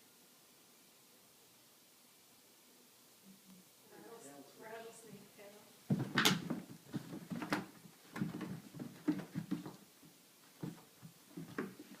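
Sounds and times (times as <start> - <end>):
cat's paws scrabbling on floor: 5.9 - 12.0.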